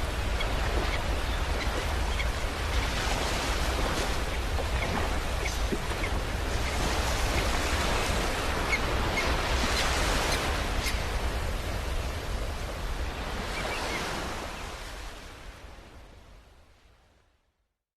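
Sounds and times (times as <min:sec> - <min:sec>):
surf washing onto beach: 0:00.0 - 0:15.6.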